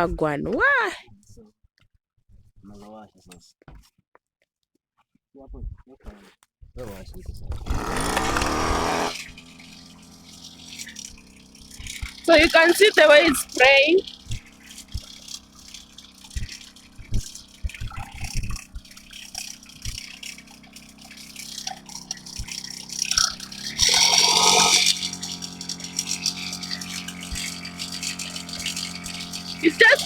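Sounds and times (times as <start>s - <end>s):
sprayer pump hum: 7.6s - 30.0s.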